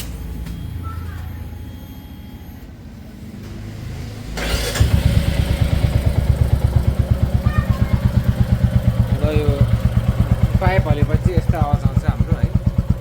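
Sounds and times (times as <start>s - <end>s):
motorcycle engine idling: 4.4s - 13.0s.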